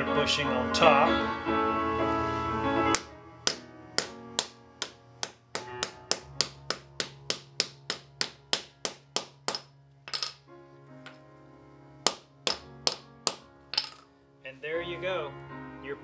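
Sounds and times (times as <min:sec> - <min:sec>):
background music: 0:00.0 - 0:16.0
hammer knocking: 0:03.0 - 0:10.4, 0:12.1 - 0:14.0.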